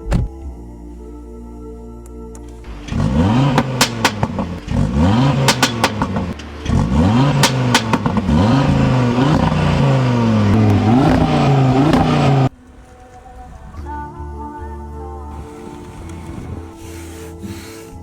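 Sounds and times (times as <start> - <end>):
car engine revving: 2.4 - 13.9, 15.3 - 18.0
exhaust pops and crackles: 2.4 - 13.9.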